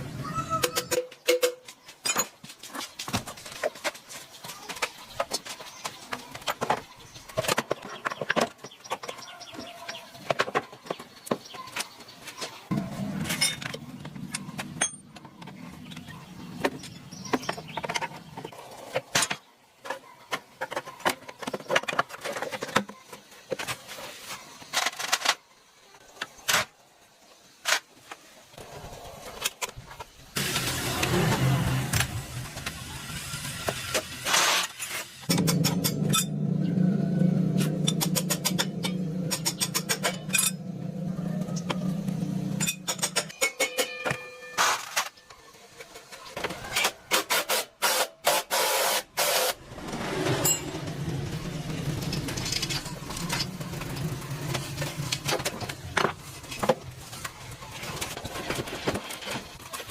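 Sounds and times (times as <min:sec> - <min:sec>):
low hum: 0:35.3 - 0:42.9.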